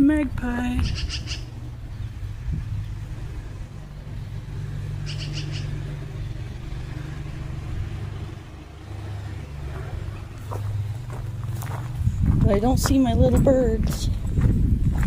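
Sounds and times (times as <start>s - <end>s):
lawn mower engine running: 0.0s - 12.3s
magpie chattering: 0.8s - 1.6s, 5.0s - 5.8s.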